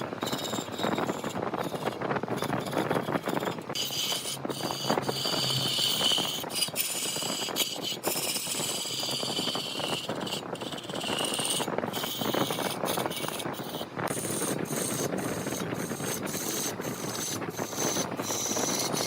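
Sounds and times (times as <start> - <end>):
tool scraping spinning wood: 0.0 - 19.0
wood lathe whine: 0.0 - 19.0.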